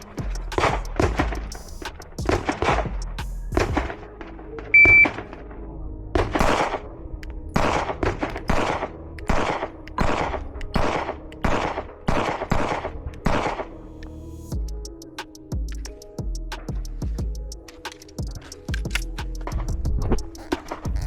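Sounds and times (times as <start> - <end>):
pistol shots with echo: 6.2 - 6.8, 7.6 - 13.6.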